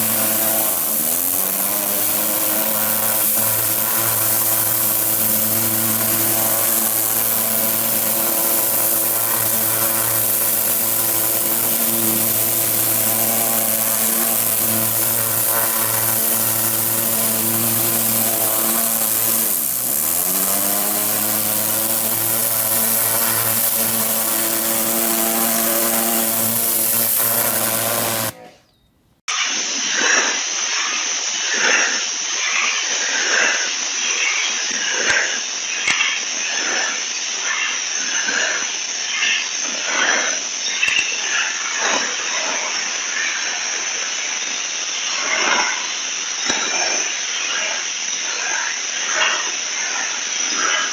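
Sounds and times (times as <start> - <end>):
dull pulsing spray hiss: 0.0 - 28.5
pressure washer motor hum: 0.0 - 28.5
water spray hiss: 0.0 - 28.5.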